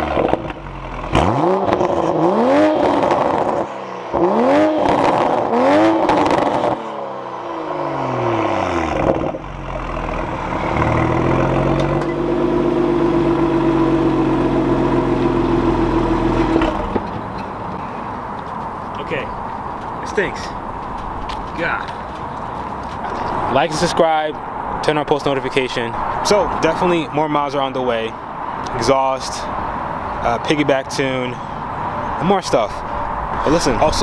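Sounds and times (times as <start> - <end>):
car engine revving: 0.0 - 18.8.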